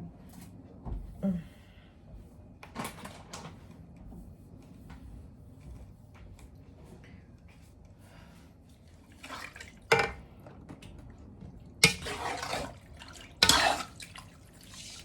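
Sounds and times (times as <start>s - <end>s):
utensil scraping pot: 11.8s - 14.1s.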